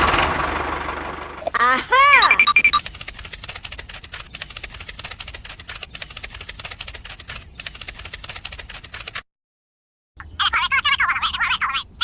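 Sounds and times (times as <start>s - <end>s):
fast mechanical clicking: 2.6s - 9.2s.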